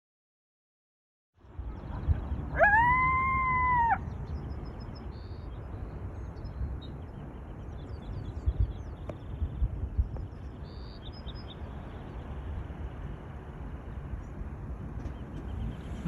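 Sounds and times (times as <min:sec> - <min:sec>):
steady low rumble: 0:01.4 - 0:16.0
drawn-out animal howl: 0:02.5 - 0:04.0.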